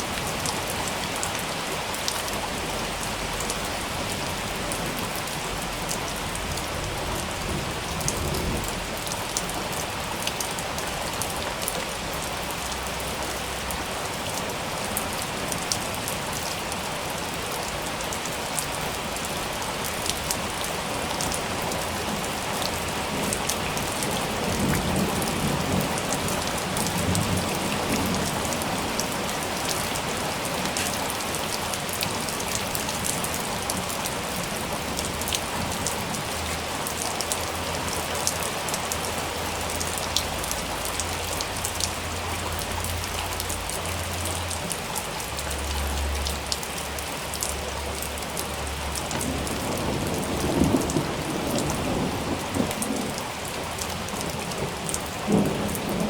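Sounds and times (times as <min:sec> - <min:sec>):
heavy rain falling: 0:00.0 - 0:56.0
raindrops hitting close by: 0:00.0 - 0:56.0
low rumble of thunder: 0:05.6 - 0:09.2, 0:49.1 - 0:56.0.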